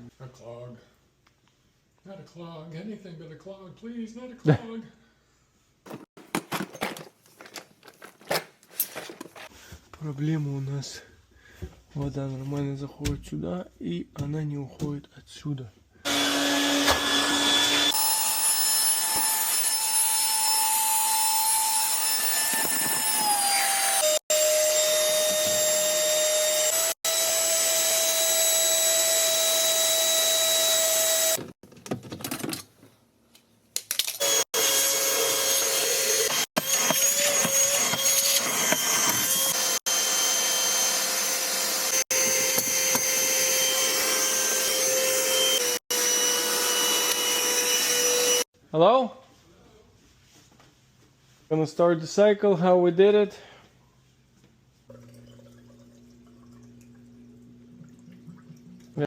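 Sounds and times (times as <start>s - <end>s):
small electric motor whining: 34.2s - 48.5s.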